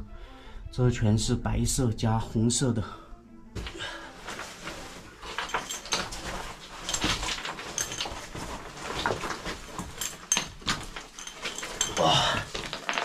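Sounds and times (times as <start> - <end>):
clothing brushing against stone: 3.6 - 13.0
person crawling through rock passage: 3.6 - 13.0.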